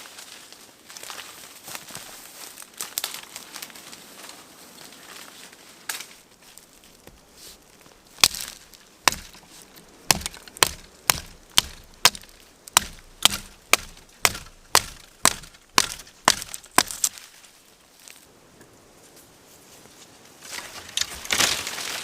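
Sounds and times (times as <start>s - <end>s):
wood being chopped: 8.1s - 17.2s.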